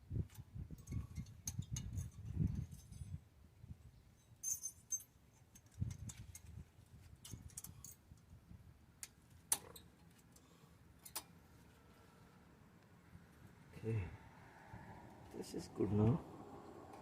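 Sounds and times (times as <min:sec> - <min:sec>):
metallic clicks and clinks: 0:00.3 - 0:03.2, 0:04.2 - 0:06.5, 0:07.2 - 0:08.0, 0:11.0 - 0:11.3.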